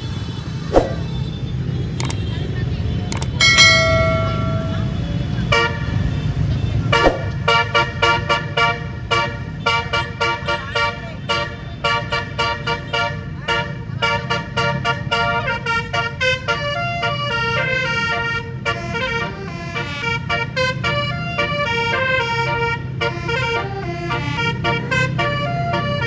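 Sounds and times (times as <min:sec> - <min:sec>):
low engine rumble: 0:00.0 - 0:10.2
bus air horn playing a tune: 0:03.4 - 0:26.0.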